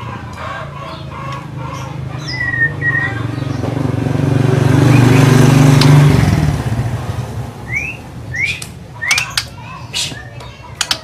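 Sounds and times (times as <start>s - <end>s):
vehicle engine passing: 0.0s - 9.0s
bird chirping: 0.8s - 4.0s, 4.7s - 6.4s, 7.6s - 11.0s.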